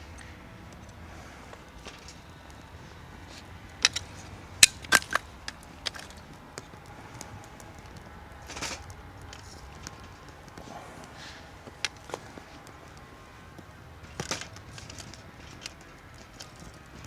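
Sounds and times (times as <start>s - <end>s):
sharp clicks and knocks: 3.8s - 6.3s.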